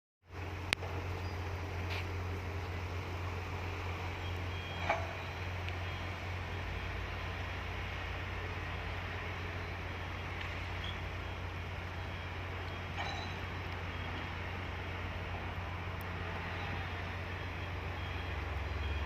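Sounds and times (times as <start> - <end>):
diesel engine running: 0.3 - 19.0
short clank: 12.9 - 13.5.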